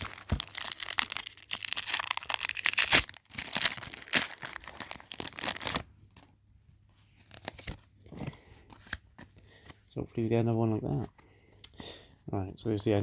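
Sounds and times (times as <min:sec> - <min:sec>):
foil wrapper tearing and crinkling: 0:00.0 - 0:05.8.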